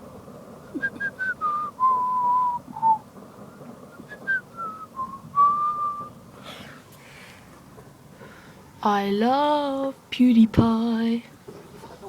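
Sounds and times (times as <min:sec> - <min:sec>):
person whistling a tune: 0:00.8 - 0:03.0, 0:04.1 - 0:06.1.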